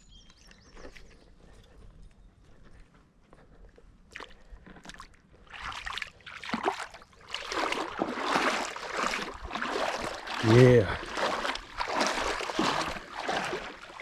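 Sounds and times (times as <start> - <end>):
water sloshing and splashing: 4.1 - 14.0.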